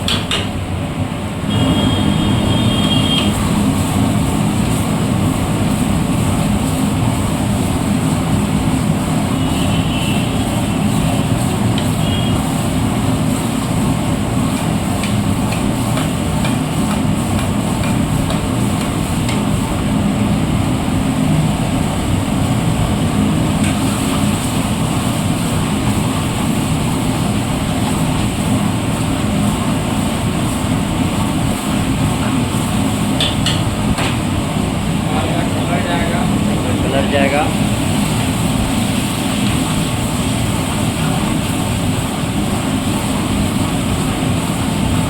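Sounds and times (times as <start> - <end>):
gas burner rushing: 0.0 - 45.0
chicken sizzling in a pan: 1.8 - 21.3.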